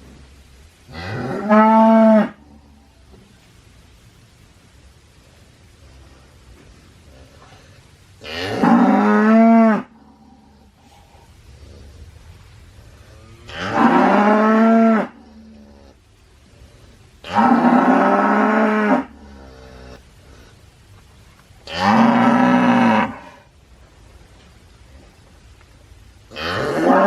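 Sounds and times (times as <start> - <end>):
faint lowing: 9.8 - 18.0
cow mooing: 13.2 - 16.0.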